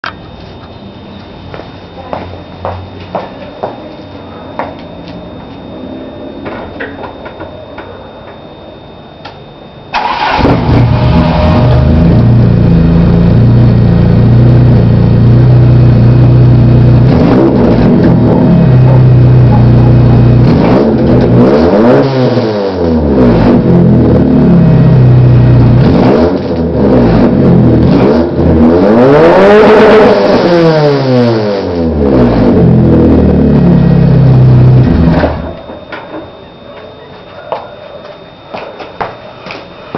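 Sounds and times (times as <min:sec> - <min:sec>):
car engine idling and revving: 0:10.0 - 0:35.8.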